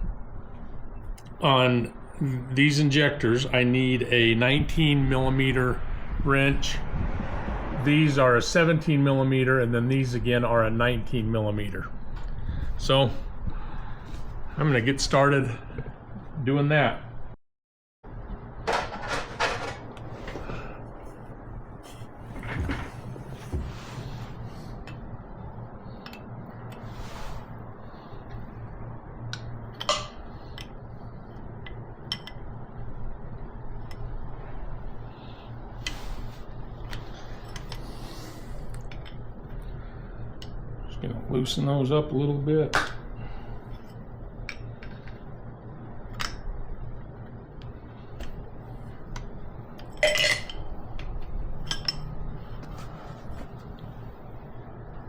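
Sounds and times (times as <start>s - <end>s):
steady low hum: 0.0s - 17.4s, 18.0s - 55.0s
metal wrenches clinking: 49.9s - 50.6s.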